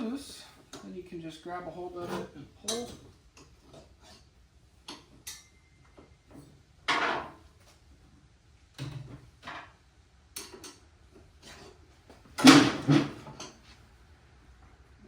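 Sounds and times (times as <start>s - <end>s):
metal clunks and scrapes: 6.0s - 7.5s, 11.3s - 13.7s.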